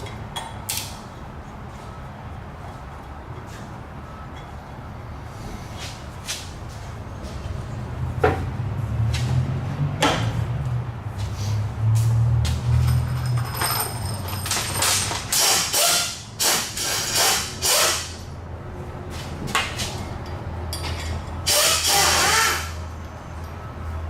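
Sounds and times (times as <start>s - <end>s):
power tool bursts: 15.3s - 18.1s, 21.4s - 22.8s.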